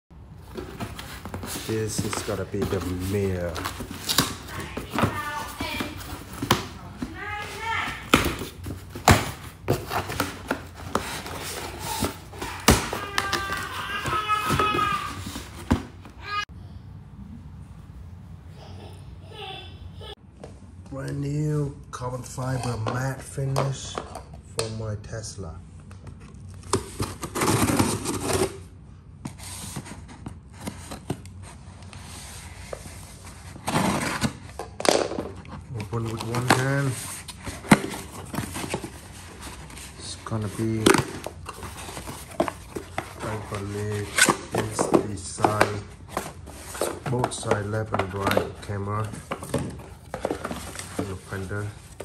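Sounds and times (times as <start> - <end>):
packaging rustling and crinkling: 0.4 - 16.0, 29.4 - 52.0.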